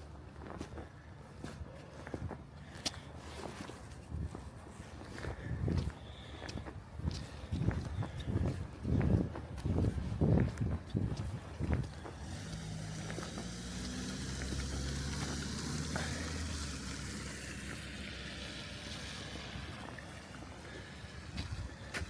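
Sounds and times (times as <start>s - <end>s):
footsteps: 0.0s - 22.0s
vehicle passing by: 11.6s - 22.0s.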